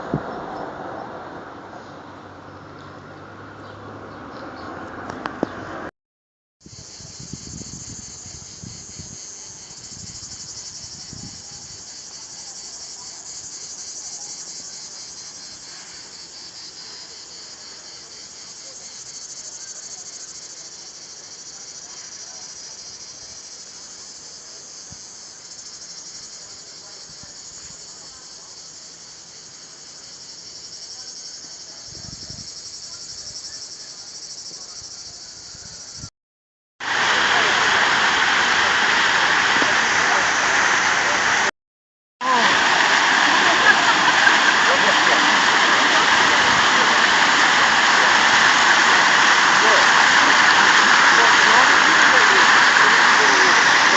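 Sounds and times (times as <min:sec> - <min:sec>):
insects buzzing and trilling: 0:06.6 - 0:36.1.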